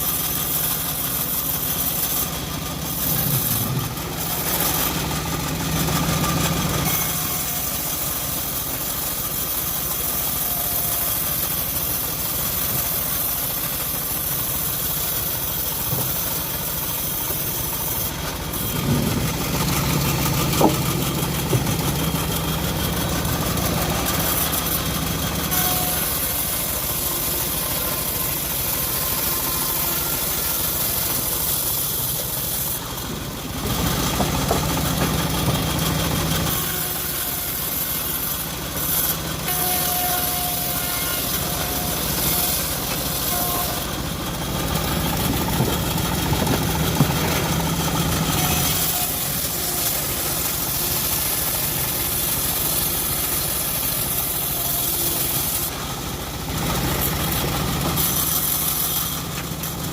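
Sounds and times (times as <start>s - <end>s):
saw blade cutting wood: 0.0s - 59.9s
sawmill engine running: 0.0s - 59.9s.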